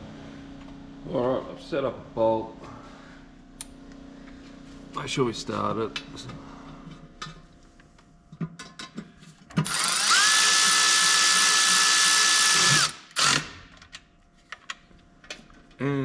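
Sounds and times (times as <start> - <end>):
cordless ratchet motor whine: 9.6 - 13.6.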